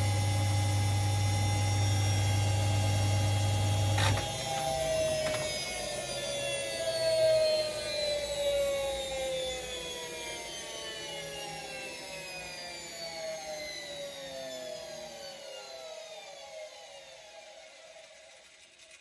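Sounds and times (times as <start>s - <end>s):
washing machine drum whining: 0.0s - 8.9s.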